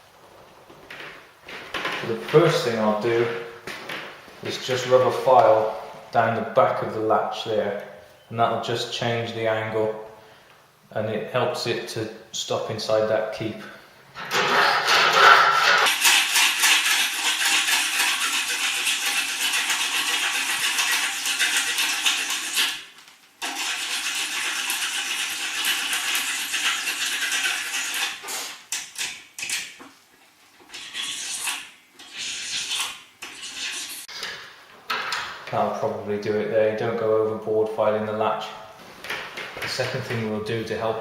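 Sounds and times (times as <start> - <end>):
hand file rasping on metal: 14.5 - 29.1.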